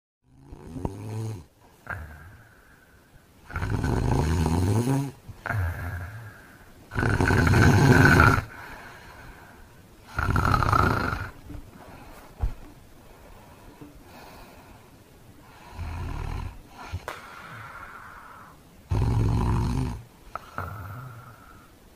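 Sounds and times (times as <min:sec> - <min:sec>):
man snoring heavily: 0:00.3 - 0:02.8, 0:03.4 - 0:11.4, 0:15.5 - 0:21.7
quiet breath sounds: 0:00.3 - 0:21.9.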